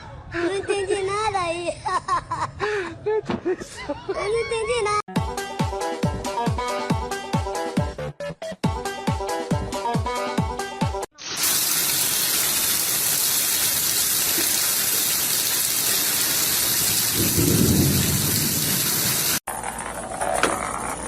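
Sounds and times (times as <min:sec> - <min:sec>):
loud rain-like rushing: 0:11.4 - 0:19.4.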